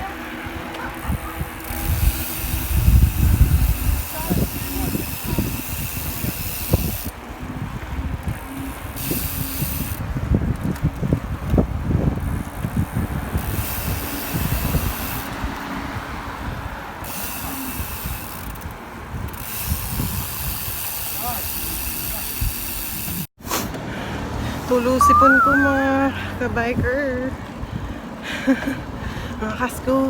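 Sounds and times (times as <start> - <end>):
wind buffeting microphone: 1.0 - 14.9.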